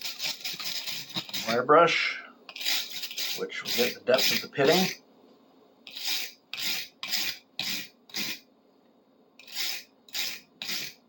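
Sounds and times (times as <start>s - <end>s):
wire brush scrubbing steel: 2.5s - 5.0s, 5.9s - 8.4s.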